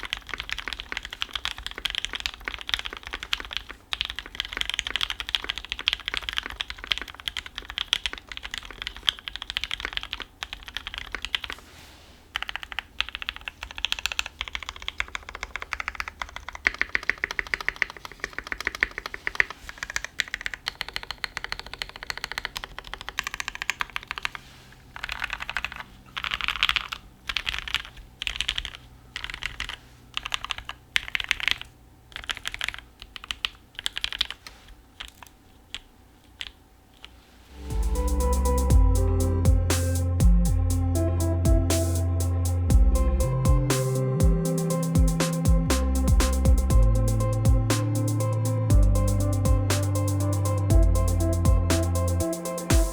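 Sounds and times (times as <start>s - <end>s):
mechanical keyboard typing: 0.0s - 11.6s, 12.4s - 24.4s, 25.0s - 37.1s
low computer hum: 0.0s - 52.9s.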